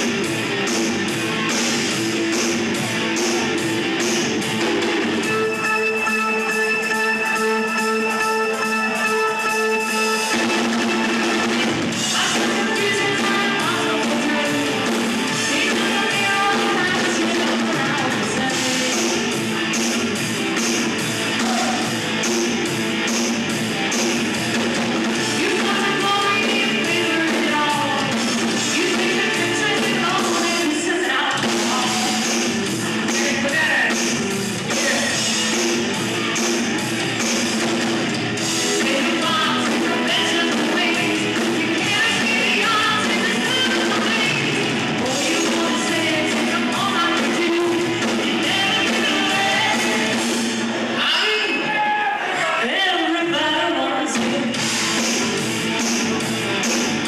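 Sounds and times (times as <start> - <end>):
rock band playing live: 0.0 - 57.0
lead vocal singing: 11.4 - 19.4, 25.2 - 35.3, 38.6 - 54.6.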